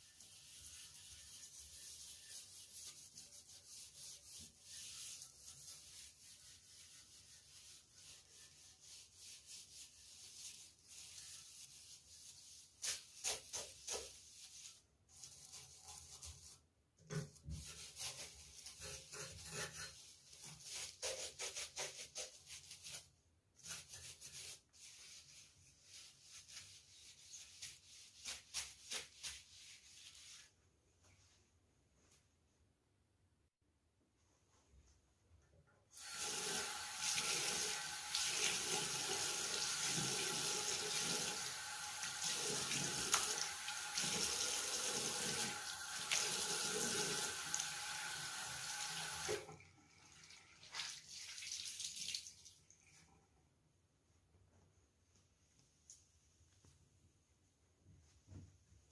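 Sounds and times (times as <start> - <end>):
surface being scrubbed: 0.0 - 30.6, 36.0 - 49.4.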